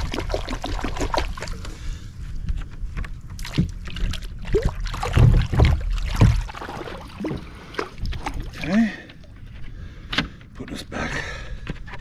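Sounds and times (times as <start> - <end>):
handling knocks and thumps: 5.0 - 8.7.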